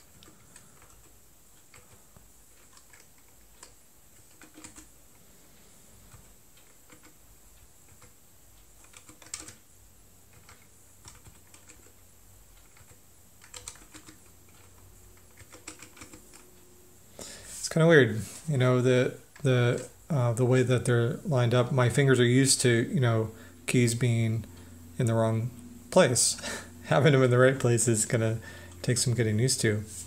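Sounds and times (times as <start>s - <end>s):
mechanical keyboard keystrokes: 2.6s - 4.9s, 6.2s - 7.2s, 8.8s - 9.6s, 10.3s - 12.0s, 12.6s - 16.4s.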